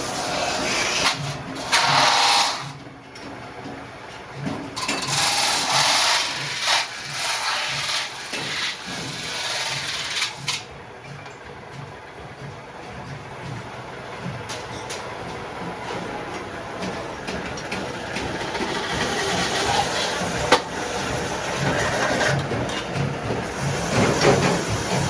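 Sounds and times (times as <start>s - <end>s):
workshop machine beating: 0.0s - 25.0s.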